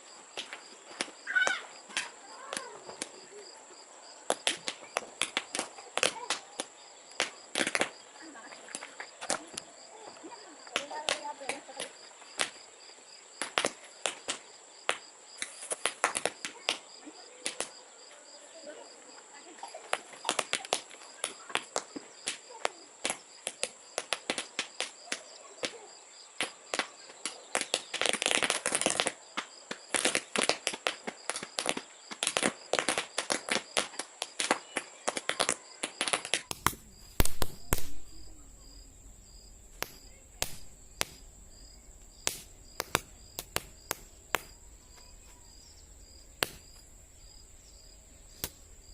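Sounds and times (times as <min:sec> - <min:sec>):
toy caps popping: 0:36.2 - 0:47.5, 0:48.2 - 0:48.9.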